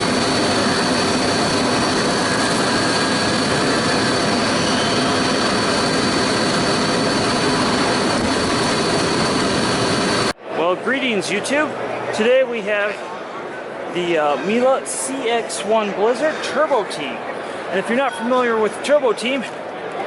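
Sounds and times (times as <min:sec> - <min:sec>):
vacuum cleaner running: 0:00.0 - 0:10.4.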